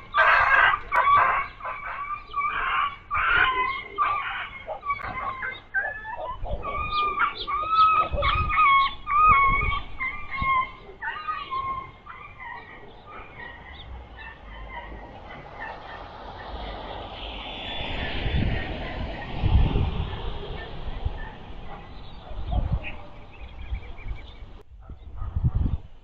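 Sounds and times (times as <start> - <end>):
dog yelping and whimpering: 0.9 - 16.0.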